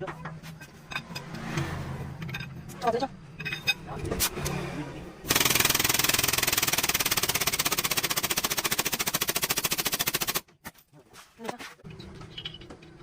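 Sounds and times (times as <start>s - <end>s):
pneumatic air tool hammering: 5.3s - 10.5s.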